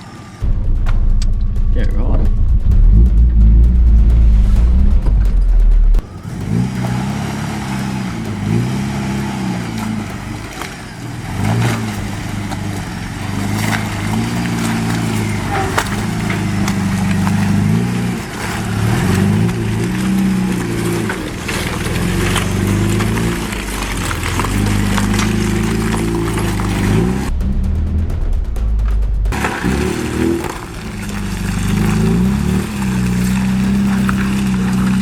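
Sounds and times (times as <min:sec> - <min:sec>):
off-road vehicle engine revving: 0:00.0 - 0:35.0
loud low rumble: 0:00.4 - 0:06.7, 0:26.3 - 0:33.1
rocks crunching under tyres: 0:05.3 - 0:27.4, 0:28.0 - 0:35.0.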